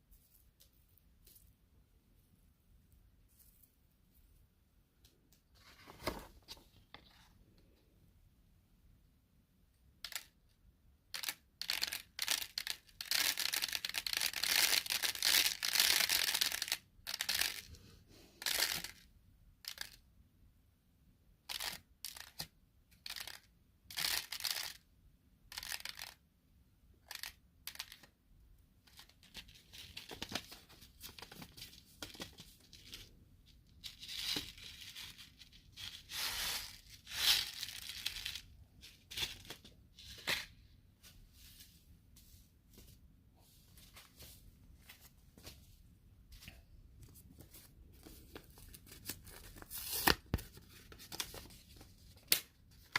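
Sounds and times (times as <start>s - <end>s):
continuous paper rustling: 5.5s - 7.3s, 28.9s - 40.1s, 47.0s - 52.9s.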